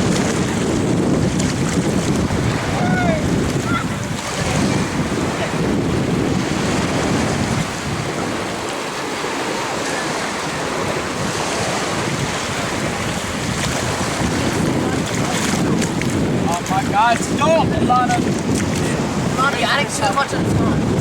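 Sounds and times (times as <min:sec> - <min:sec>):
beach surf: 0:00.0 - 0:21.0
wind buffeting microphone: 0:00.0 - 0:21.0.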